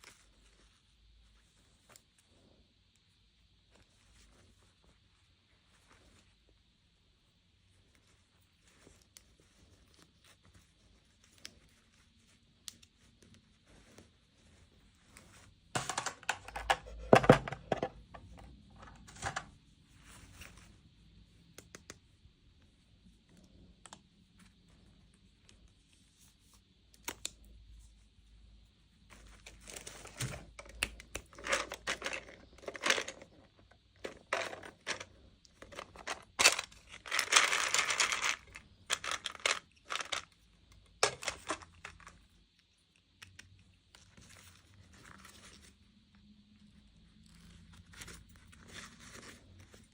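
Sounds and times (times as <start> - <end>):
packaging crinkling and tearing: 34.0 - 40.3.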